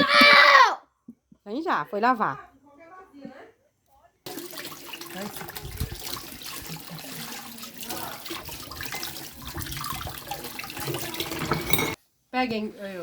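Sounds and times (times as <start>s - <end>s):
tap water running into sink: 4.3s - 12.0s.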